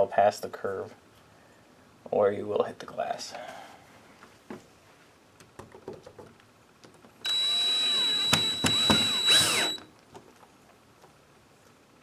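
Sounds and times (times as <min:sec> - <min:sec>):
power drill whining: 0:07.3 - 0:09.9.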